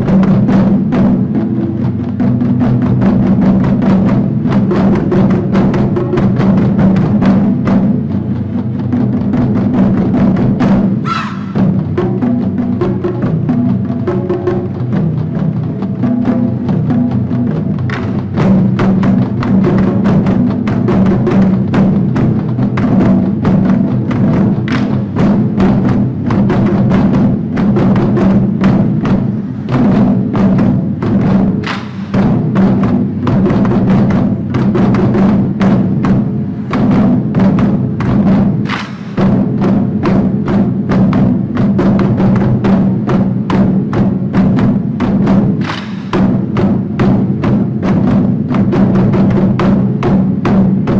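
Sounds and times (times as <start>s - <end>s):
taiko drum strikes: 0.0s - 50.9s.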